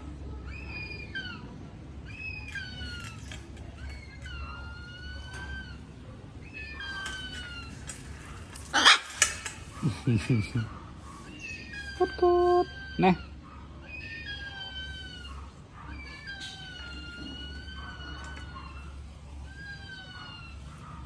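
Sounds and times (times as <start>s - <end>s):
parrot harsh squawk: 8.6s - 9.5s.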